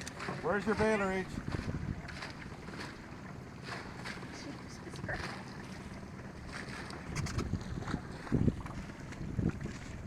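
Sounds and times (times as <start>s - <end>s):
water splashing around canoe: 0.0s - 10.0s
wind noise on microphone: 1.2s - 2.3s, 7.0s - 10.0s.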